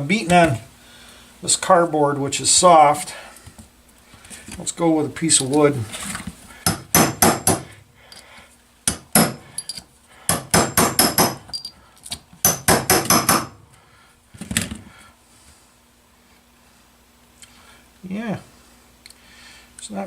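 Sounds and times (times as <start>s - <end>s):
hammer striking metal: 6.7s - 7.7s, 8.9s - 9.7s, 10.3s - 11.6s, 12.4s - 13.6s.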